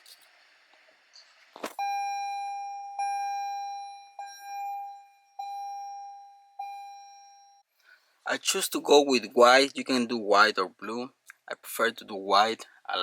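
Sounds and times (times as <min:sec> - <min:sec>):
bell-like warning dings: 0:01.8 - 0:07.6.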